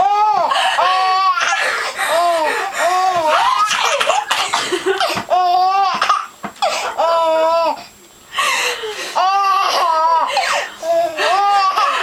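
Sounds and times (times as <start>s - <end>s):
child laughing: 9.8s - 12.0s.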